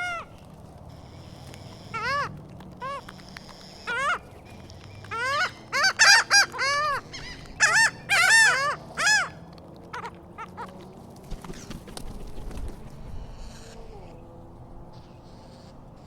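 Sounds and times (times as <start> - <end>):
seagulls squawking: 0.0 - 11.8.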